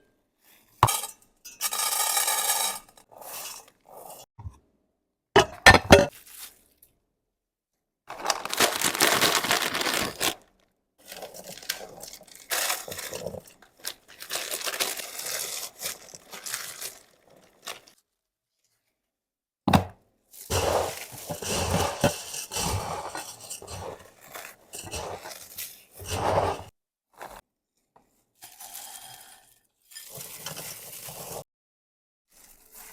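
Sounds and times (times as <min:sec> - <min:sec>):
dry crinkling and crunching: 0:08.1 - 0:18.0.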